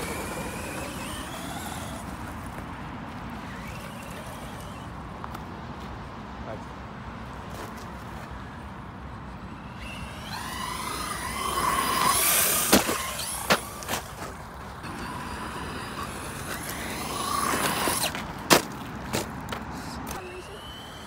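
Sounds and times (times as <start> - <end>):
electric rc car motor whining: 0.0 - 2.6, 3.4 - 5.0, 9.6 - 18.4, 19.8 - 21.0.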